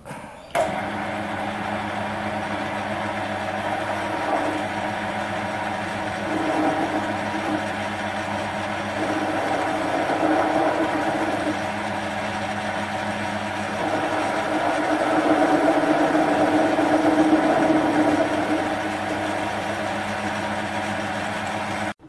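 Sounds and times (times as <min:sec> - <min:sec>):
lathe motor hum: 0:00.6 - 0:22.0
lathe tool cutting metal: 0:00.6 - 0:22.0.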